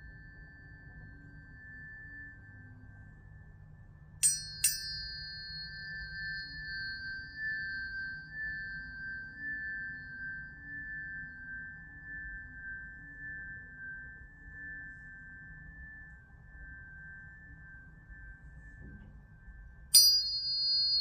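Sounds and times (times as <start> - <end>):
high ringing tone: 0.0 - 21.0
low steady pure tone: 0.0 - 21.0
tuning fork metallic ping: 0.0 - 21.0.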